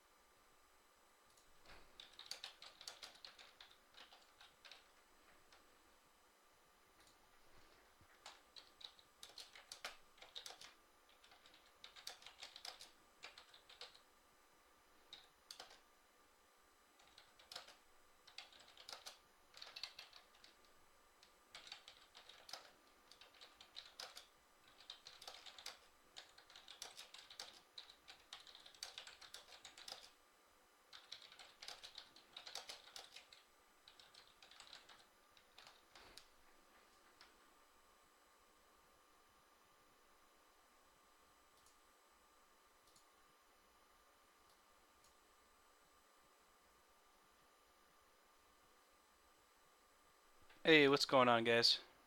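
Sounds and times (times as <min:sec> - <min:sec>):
typing on keyboard: 0:01.3 - 0:05.6, 0:08.2 - 0:14.1, 0:15.1 - 0:15.8, 0:17.0 - 0:30.2, 0:30.9 - 0:36.3.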